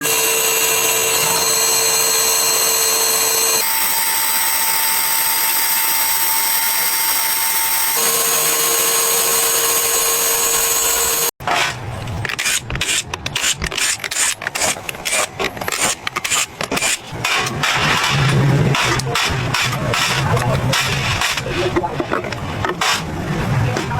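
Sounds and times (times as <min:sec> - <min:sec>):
power tool whine: 0:00.0 - 0:11.4.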